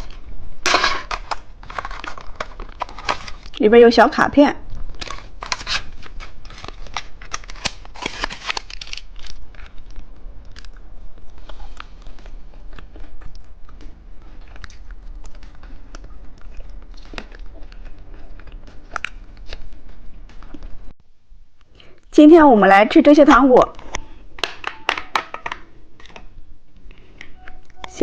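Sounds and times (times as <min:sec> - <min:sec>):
plastic packaging crinkling: 0:01.0 - 0:03.6, 0:04.9 - 0:10.8.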